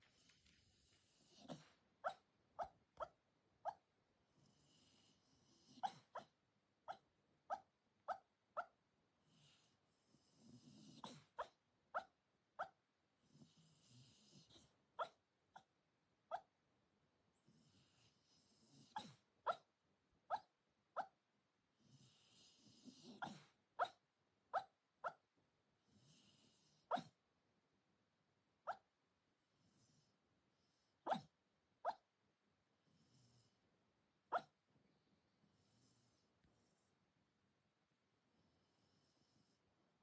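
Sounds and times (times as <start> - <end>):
dog yipping in sleep: 1.4 - 3.9, 5.7 - 8.8, 11.0 - 12.8, 14.5 - 15.7, 16.3 - 16.6, 18.9 - 19.7, 20.3 - 21.2, 23.0 - 25.3, 26.9 - 27.2, 28.6 - 28.9, 31.0 - 32.1, 34.3 - 34.6.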